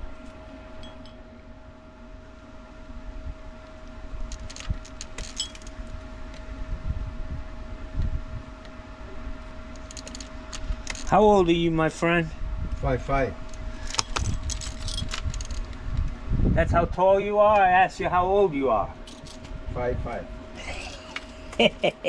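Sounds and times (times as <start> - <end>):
steady mechanical hum: 0.0 - 22.0
light metallic clinks: 0.8 - 1.3.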